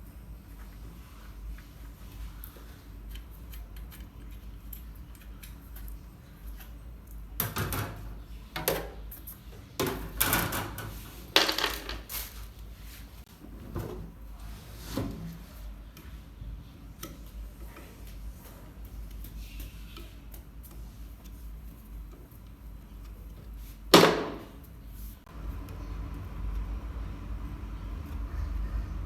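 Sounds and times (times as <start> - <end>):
steady low hum: 12.6 - 29.0.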